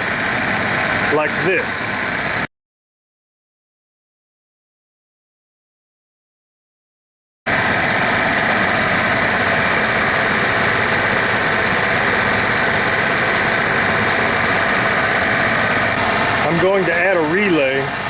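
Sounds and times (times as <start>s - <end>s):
engine idling: 0.0s - 2.5s, 7.5s - 18.0s.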